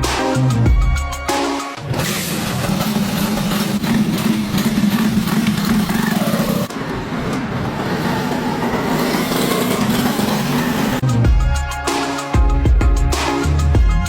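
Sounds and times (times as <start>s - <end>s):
motorcycle engine running: 1.9s - 11.0s.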